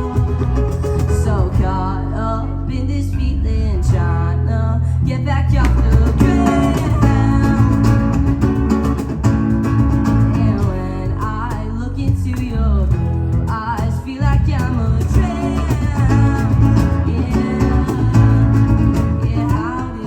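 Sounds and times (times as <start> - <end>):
live band playing: 0.0 - 2.3, 5.6 - 20.0
person singing: 0.0 - 8.5, 10.2 - 20.0.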